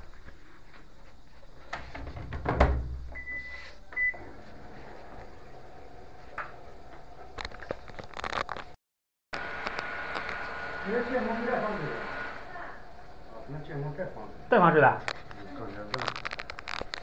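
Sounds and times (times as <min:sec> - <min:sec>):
washing machine beeps: 0:03.1 - 0:04.3.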